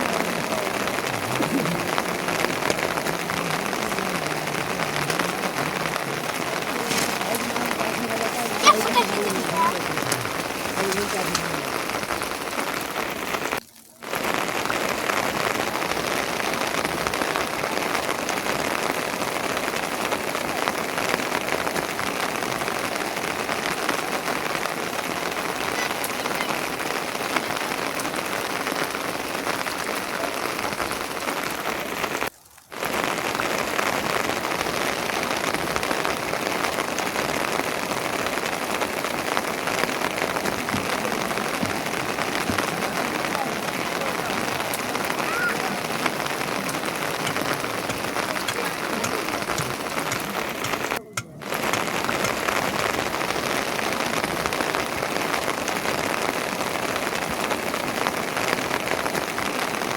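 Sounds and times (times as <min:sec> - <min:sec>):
steady rain hissing: 0:00.0 - 0:59.9.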